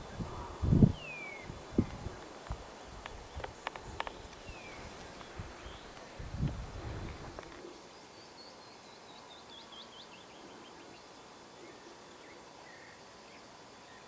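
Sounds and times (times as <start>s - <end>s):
small bird singing: 0.0s - 2.4s, 3.1s - 6.1s, 7.5s - 14.0s
faint outdoor hiss: 0.0s - 14.0s
faint bird chirps: 7.5s - 14.0s.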